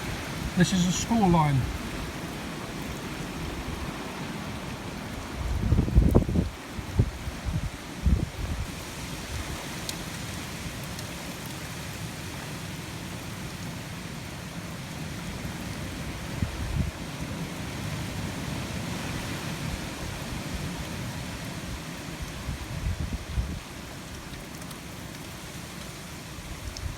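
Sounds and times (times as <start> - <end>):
heavy rain falling: 0.0 - 22.2
wind buffeting microphone: 5.3 - 8.7.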